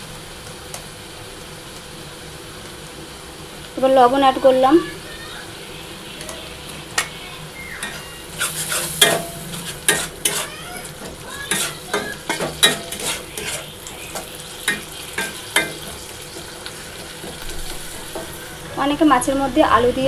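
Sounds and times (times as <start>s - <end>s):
onion paste sizzling in oil: 0.0s - 20.0s
metal spatula scraping pan: 7.8s - 18.7s.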